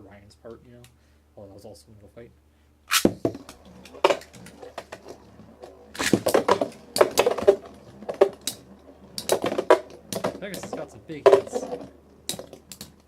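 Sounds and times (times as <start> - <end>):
spinning tops clashing: 5.9 - 13.0.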